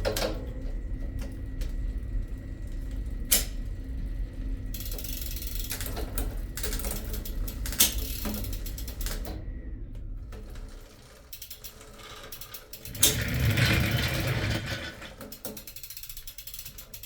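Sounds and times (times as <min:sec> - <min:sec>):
mechanical ratcheting and clicking: 0:04.7 - 0:09.3, 0:11.0 - 0:17.0
rough grinding mechanical noise: 0:11.8 - 0:15.8.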